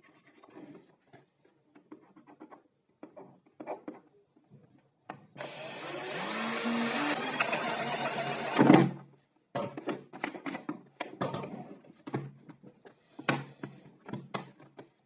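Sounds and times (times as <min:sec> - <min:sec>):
vacuum cleaner motor running: 0:05.4 - 0:08.6.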